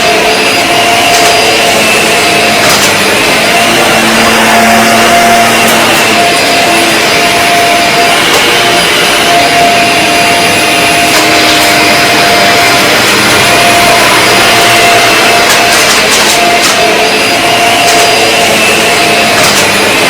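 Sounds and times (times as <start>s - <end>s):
vacuum cleaner running: 0.0s - 20.0s.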